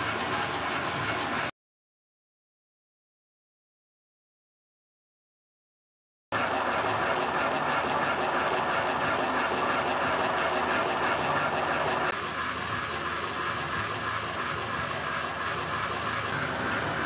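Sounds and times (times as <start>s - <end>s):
milling machine whirring: 0.0s - 1.5s, 6.4s - 17.0s
high whine: 6.4s - 17.0s.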